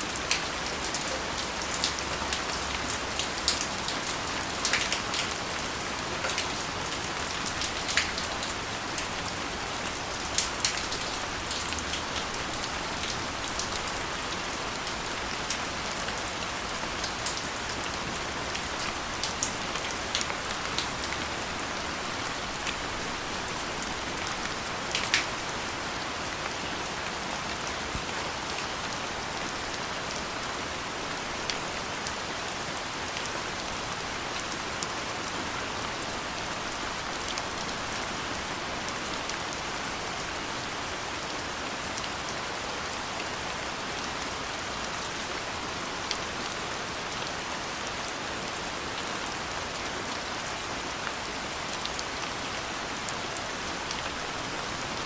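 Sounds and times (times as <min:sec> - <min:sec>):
soft rain falling: 0:00.0 - 0:55.0
raindrops ticking sharply: 0:16.7 - 0:29.4.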